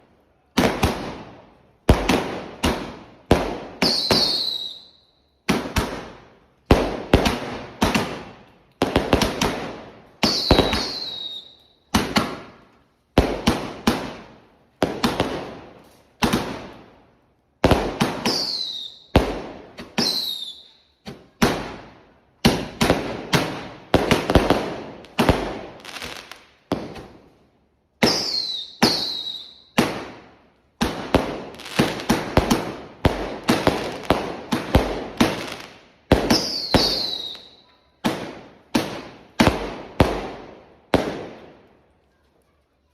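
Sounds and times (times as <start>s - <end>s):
fireworks banging: 0.6s - 4.6s, 5.5s - 16.8s, 21.0s - 27.3s, 28.0s - 41.6s
falling firework whistle: 3.8s - 5.3s, 10.2s - 11.9s, 18.3s - 19.1s, 19.8s - 20.8s, 28.1s - 29.8s, 36.3s - 37.6s.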